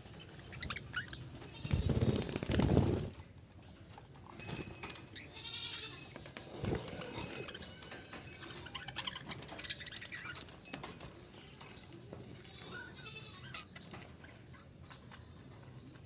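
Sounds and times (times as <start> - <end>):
budgerigars chirping and warbling: 0.1 - 3.0, 7.0 - 16.0.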